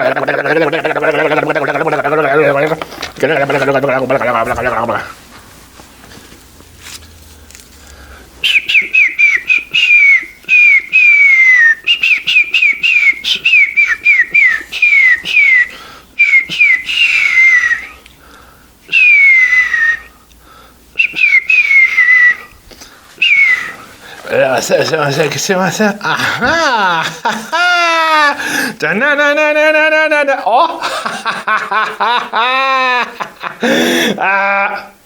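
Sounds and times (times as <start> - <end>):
person whistling falling notes: 8.4 - 18.0, 18.9 - 20.1, 21.0 - 22.6, 23.2 - 23.9.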